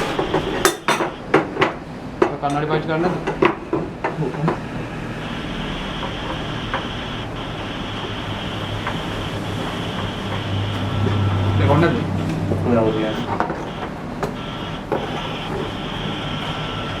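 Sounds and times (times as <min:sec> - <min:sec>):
arc welding hiss: 0:04.8 - 0:17.0.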